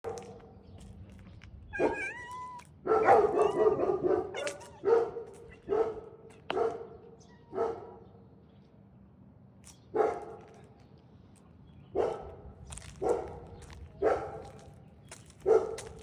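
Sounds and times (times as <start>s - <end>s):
domestic animal calling: 1.8s - 2.6s.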